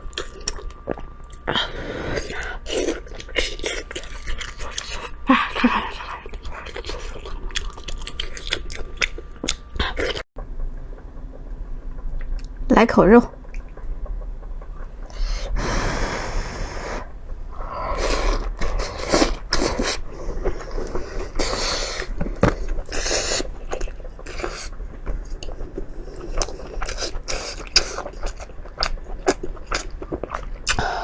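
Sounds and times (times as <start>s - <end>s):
chewing with wet smacking: 0.0s - 1.5s, 2.2s - 10.2s, 25.3s - 31.0s
breathing or slurping: 15.1s - 24.7s.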